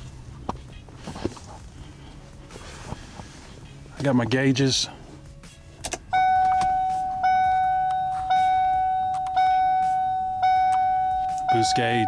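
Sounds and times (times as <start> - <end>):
car warning chime: 6.1 - 12.0.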